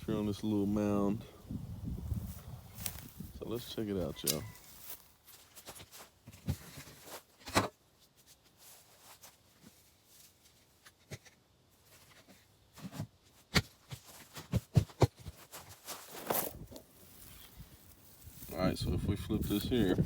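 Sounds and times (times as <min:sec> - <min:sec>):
footsteps: 0:02.0 - 0:07.2, 0:15.3 - 0:20.0
handling knocks and rustles: 0:04.2 - 0:18.5.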